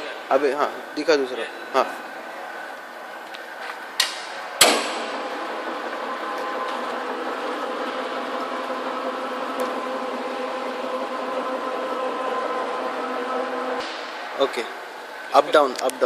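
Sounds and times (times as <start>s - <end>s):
sharp metallic clunks: 4.0s - 5.3s
milling machine humming and whining: 4.8s - 15.6s.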